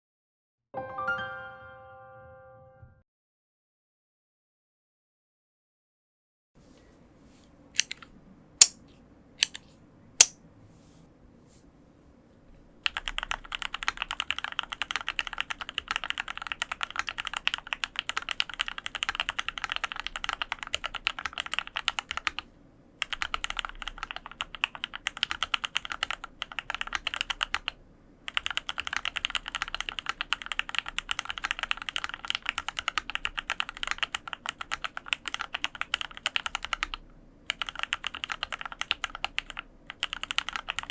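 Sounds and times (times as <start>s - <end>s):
keyboard key clicks: 7.8s - 8.0s
fast typing on keyboard: 12.8s - 40.9s.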